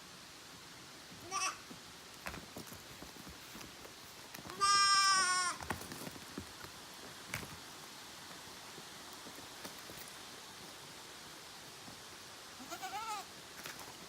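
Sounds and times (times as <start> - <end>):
goat bleating: 1.2 - 1.6, 4.5 - 5.6, 12.6 - 13.3.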